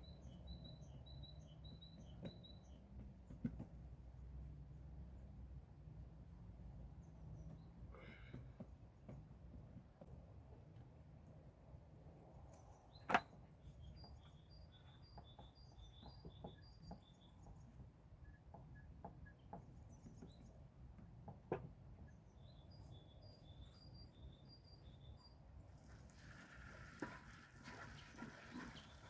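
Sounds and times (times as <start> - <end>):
songbird chirping: 0.0 - 3.4, 12.3 - 21.2, 21.9 - 26.0.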